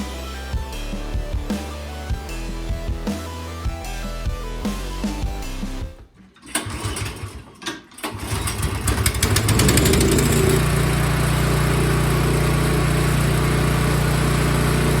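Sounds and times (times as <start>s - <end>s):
small engine starting: 6.4s - 15.0s.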